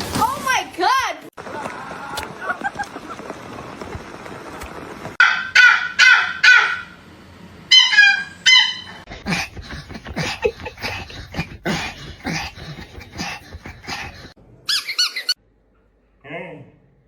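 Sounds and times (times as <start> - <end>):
dog yipping: 5.2 - 6.9, 7.7 - 9.0, 14.7 - 15.4
dog barking: 5.2 - 7.0, 7.7 - 8.9.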